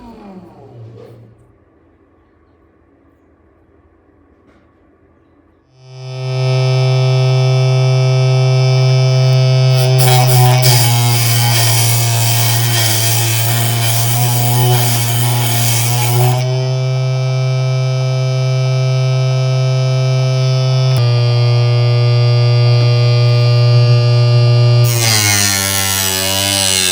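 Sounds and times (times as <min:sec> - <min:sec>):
table saw motor whine: 0:05.8 - 0:26.9
saw blade grinding through wood: 0:09.2 - 0:16.7, 0:24.8 - 0:26.9.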